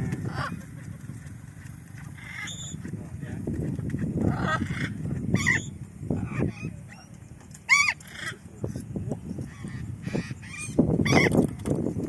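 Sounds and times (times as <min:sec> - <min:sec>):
parrot squawking: 0:02.2 - 0:02.8, 0:04.3 - 0:06.7, 0:07.7 - 0:08.4, 0:09.5 - 0:11.3.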